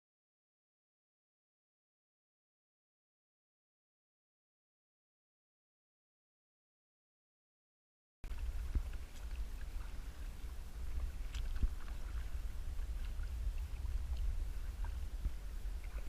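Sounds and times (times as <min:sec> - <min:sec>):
wind rumble on microphone: 0:08.2 - 0:16.0
water splashes: 0:08.3 - 0:16.0.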